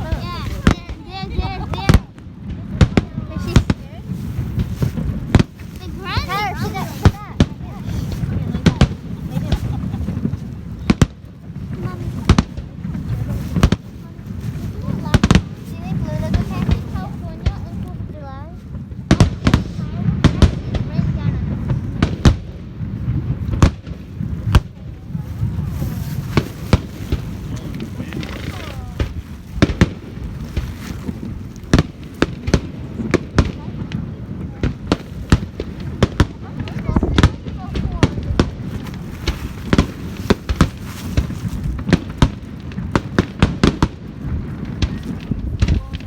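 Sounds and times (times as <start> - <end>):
fireworks bangs: 0.0 - 46.0.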